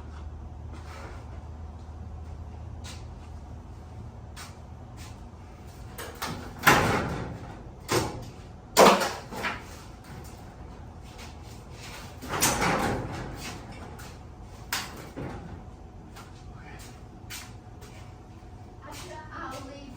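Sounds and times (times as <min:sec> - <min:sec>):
garage door banging: 0:05.9 - 0:10.4, 0:11.8 - 0:14.1.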